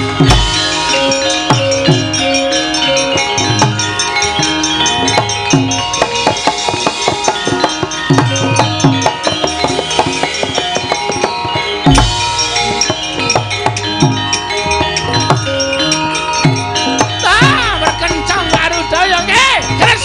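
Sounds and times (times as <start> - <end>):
drum strokes: 0.0 - 20.0
metal-keyed instruments ringing: 0.0 - 20.0.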